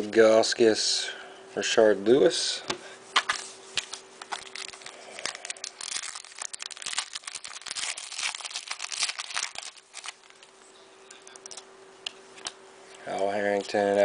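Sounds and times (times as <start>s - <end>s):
faint steady hum: 0.0s - 14.0s
foil wrapper crinkling and tearing: 3.8s - 10.5s.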